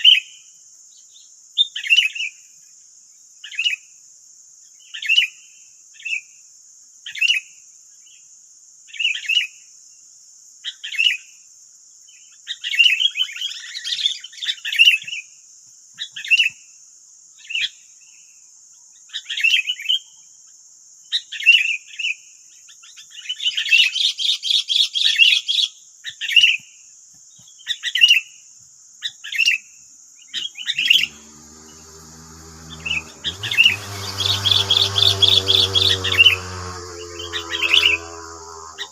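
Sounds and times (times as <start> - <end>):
low droning hum: 30.4 - 38.9.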